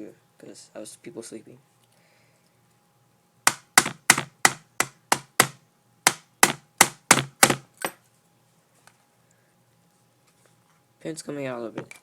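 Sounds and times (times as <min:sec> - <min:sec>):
hammer tapping on screwdriver: 0:03.5 - 0:08.0.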